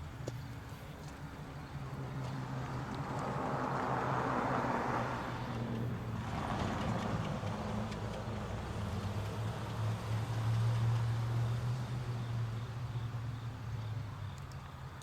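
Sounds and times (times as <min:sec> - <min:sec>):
vehicle tyre noise passing: 0:01.0 - 0:14.2.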